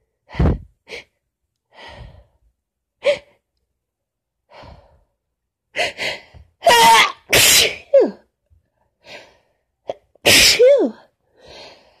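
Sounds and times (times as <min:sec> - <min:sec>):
woman sneezing: 0:06.7 - 0:08.2, 0:10.2 - 0:11.0.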